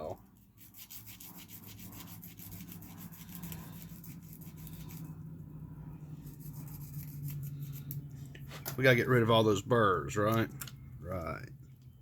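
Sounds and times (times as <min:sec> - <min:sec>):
steady low hum: 0:00.0 - 0:12.0
file rasping on metal: 0:00.6 - 0:05.0, 0:06.2 - 0:07.9.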